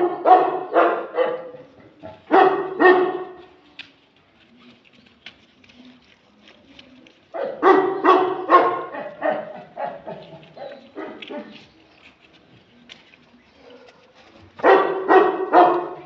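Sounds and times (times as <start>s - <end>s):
puppies barking: 0.0s - 3.4s, 7.4s - 11.7s, 13.6s - 16.0s.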